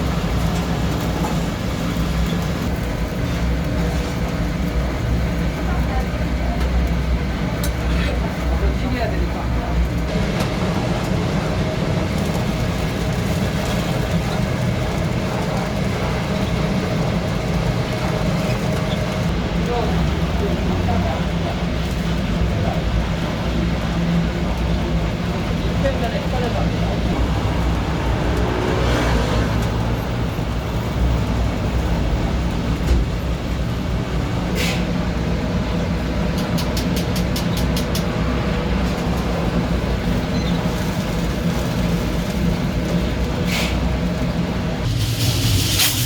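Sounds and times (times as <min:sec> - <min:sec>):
low mechanical rumble: 0:00.0 - 0:46.0
short hiss: 0:44.9 - 0:46.0.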